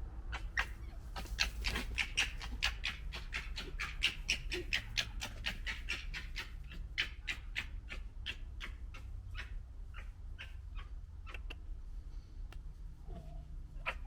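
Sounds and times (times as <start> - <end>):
foxes gekkering: 0.3 - 11.7, 13.0 - 14.0.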